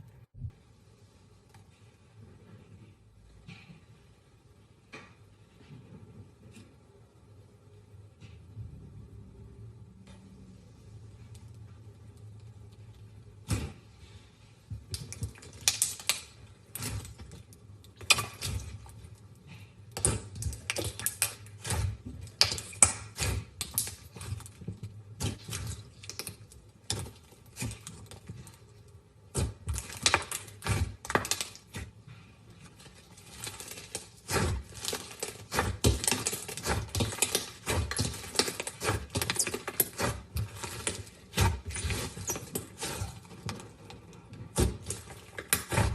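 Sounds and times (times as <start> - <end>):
slime clicking and popping: 14.9 - 17.2, 33.4 - 43.0.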